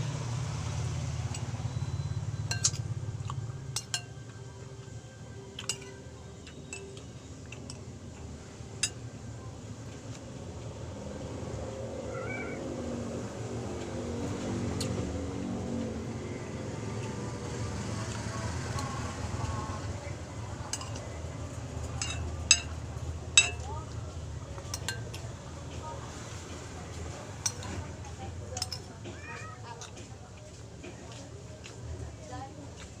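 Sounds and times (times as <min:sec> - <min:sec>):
cutlery clinking on a plate: 0:02.5 - 0:02.9, 0:05.6 - 0:07.8, 0:20.7 - 0:21.1, 0:21.9 - 0:22.8, 0:23.4 - 0:23.7, 0:28.5 - 0:30.1
cat meowing: 0:12.1 - 0:12.6, 0:29.1 - 0:29.6.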